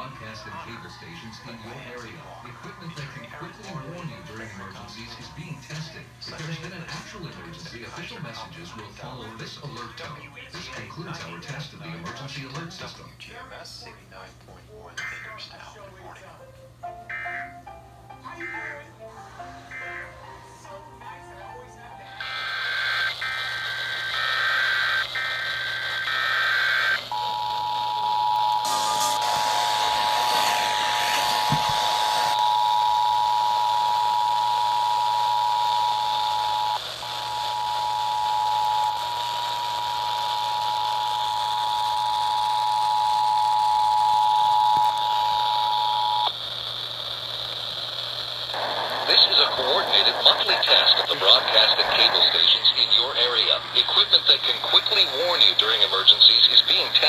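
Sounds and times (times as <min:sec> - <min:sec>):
two-tone alert signal: 0:17.1 - 0:17.6
radio static: 0:22.0 - 0:57.0
digital data bursts: 0:22.2 - 0:43.1, 0:48.5 - 0:57.0.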